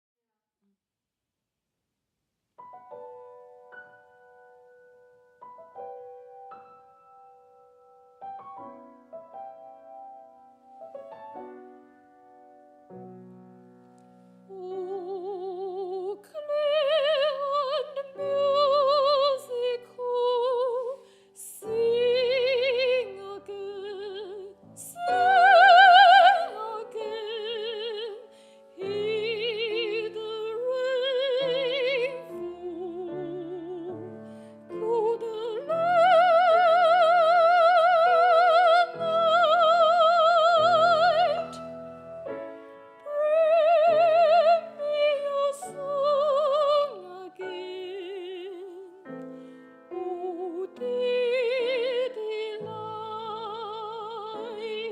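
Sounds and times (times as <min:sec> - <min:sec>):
piano accompaniment: 0:02.6 - 0:54.9
woman singing operatically: 0:14.5 - 0:41.6, 0:43.0 - 0:49.0, 0:49.9 - 0:54.9.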